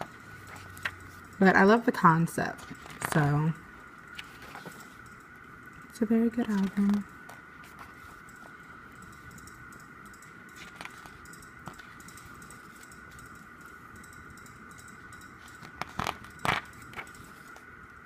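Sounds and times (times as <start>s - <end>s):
faint high-pitched hum: 0.0s - 18.0s
paper rustling and page handling: 2.6s - 3.4s, 4.1s - 5.0s, 6.4s - 7.0s, 10.6s - 12.8s, 15.4s - 17.6s.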